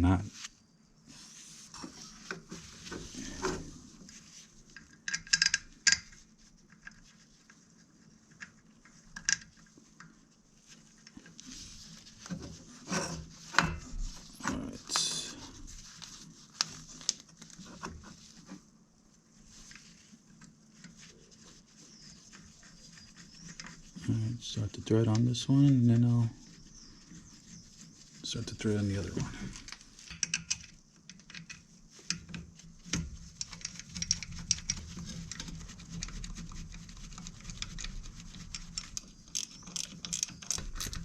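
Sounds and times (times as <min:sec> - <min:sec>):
small metal parts clicking: 0:38.5 - 0:41.0.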